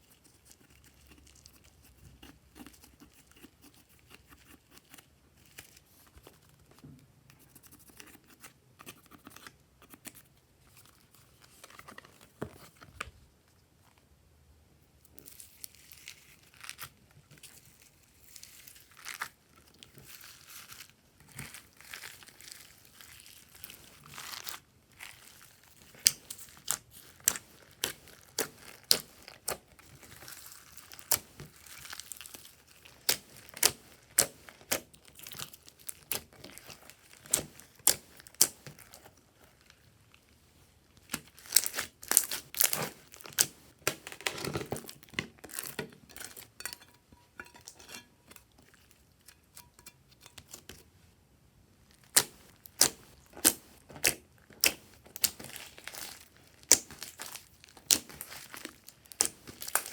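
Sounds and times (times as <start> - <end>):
slime sticky crackling: 20.0 - 40.2, 41.0 - 46.4, 51.9 - 59.9.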